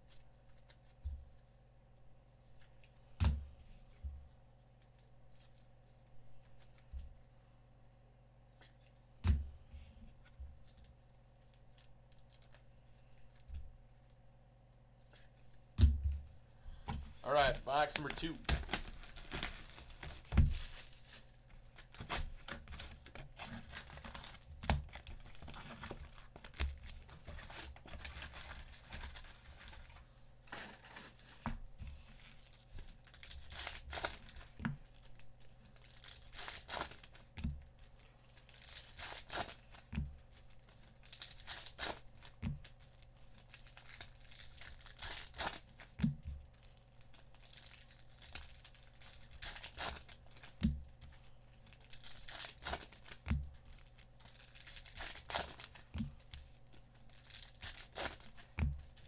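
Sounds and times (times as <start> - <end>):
wrappers tearing and crinkling: 11.4 - 12.7, 17.4 - 31.4, 32.1 - 46.0, 46.6 - 59.0.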